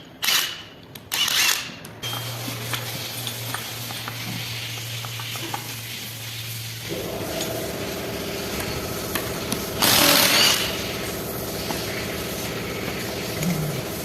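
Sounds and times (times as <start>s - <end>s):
steady low hum: 5.8s - 14.0s
motor running: 6.8s - 14.0s.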